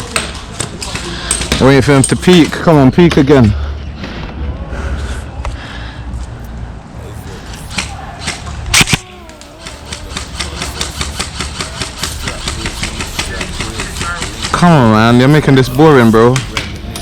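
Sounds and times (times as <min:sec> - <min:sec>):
loud sharp snap: 0:07.7 - 0:09.4.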